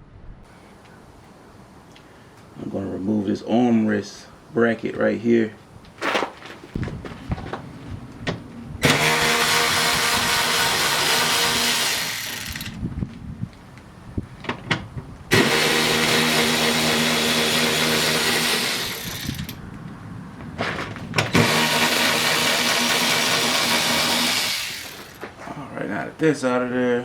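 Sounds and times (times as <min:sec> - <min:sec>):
power drill whirring: 0:08.8 - 0:12.8, 0:15.3 - 0:19.6, 0:21.3 - 0:25.2.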